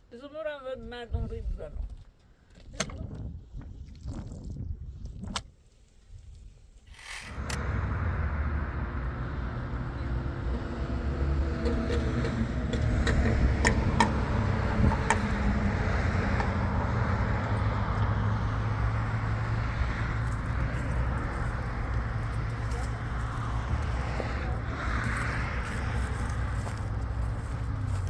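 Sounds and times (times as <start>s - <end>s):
engine and road rumble: 6.7s - 28.0s.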